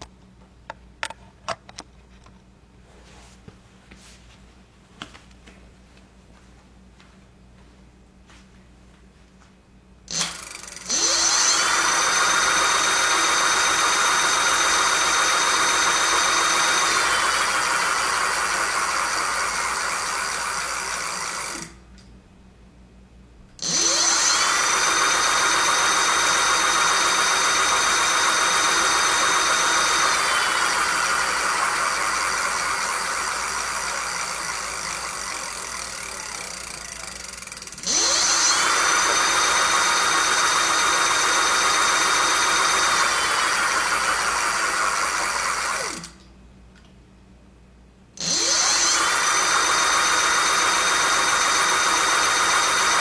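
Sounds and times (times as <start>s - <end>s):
electric motor whine: 10.1s - 21.8s, 23.6s - 46.2s, 48.2s - 53.0s.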